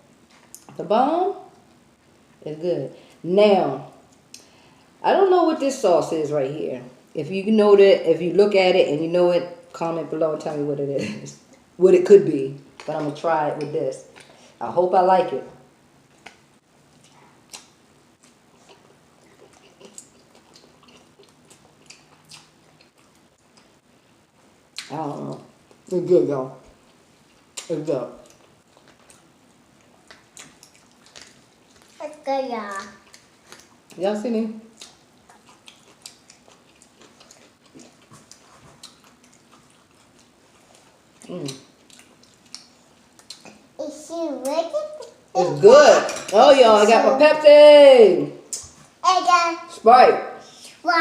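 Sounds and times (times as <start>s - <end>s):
wet chewing mouth sounds: 16.1s - 23.8s, 26.8s - 32.0s, 34.7s - 43.7s.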